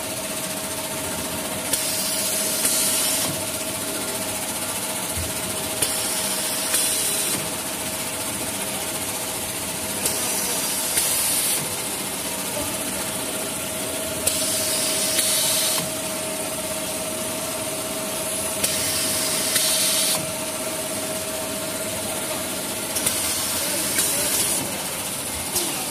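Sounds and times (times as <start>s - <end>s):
hiss: 14.3s - 15.9s, 18.6s - 20.2s.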